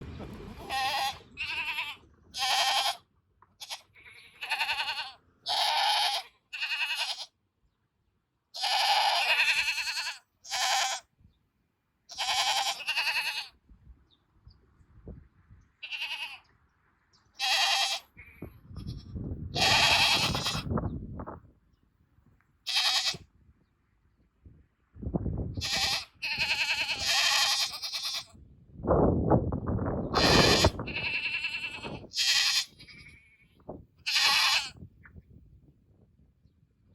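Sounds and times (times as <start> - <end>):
low rumbling noise: 0.0 - 2.4
goats bleating: 0.6 - 3.0, 3.6 - 7.3, 8.6 - 11.1, 12.1 - 13.5, 15.8 - 16.5, 17.4 - 20.7, 22.7 - 23.2, 25.6 - 28.3, 30.2 - 33.4, 34.0 - 34.8.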